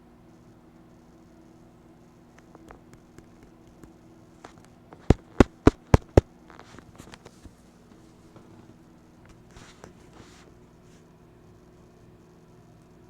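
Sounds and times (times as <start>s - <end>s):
faint steady hum: 0.0s - 13.0s
sharp clicks or knocks: 5.0s - 6.7s.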